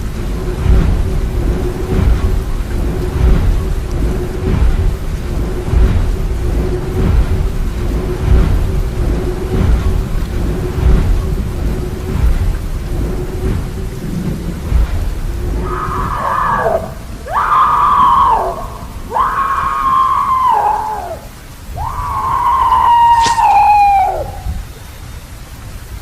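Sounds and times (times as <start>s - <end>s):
rain: 0.0s - 26.0s
rumble of thunder: 0.0s - 26.0s
long wailing cries: 15.6s - 24.6s.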